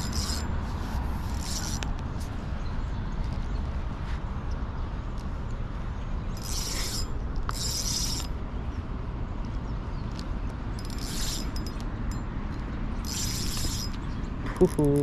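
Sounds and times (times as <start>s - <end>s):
fishing reel whirring: 0.0s - 0.5s, 1.3s - 1.9s, 6.4s - 8.4s, 10.8s - 12.1s, 13.0s - 14.0s.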